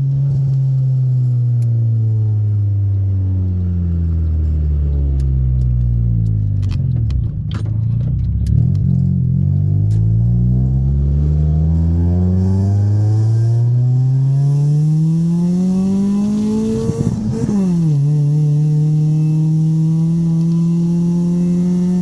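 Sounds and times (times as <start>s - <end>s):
car engine running: 0.0s - 12.9s.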